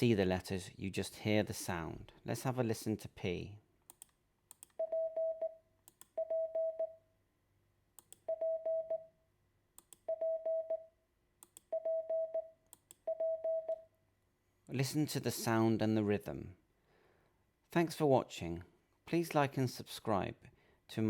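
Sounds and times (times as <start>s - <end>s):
sharp clicks: 3.9s - 4.8s, 5.9s - 6.1s, 8.0s - 8.2s, 9.8s - 10.0s, 11.4s - 11.7s
morse code beeps: 4.8s - 5.6s, 6.2s - 7.0s, 8.3s - 9.1s, 10.1s - 10.9s, 11.7s - 12.5s, 13.1s - 13.8s.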